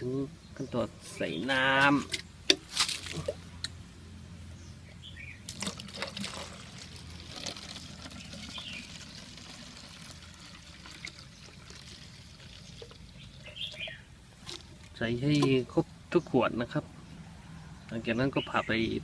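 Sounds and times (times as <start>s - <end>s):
water pouring into bottles: 5.4s - 15.7s.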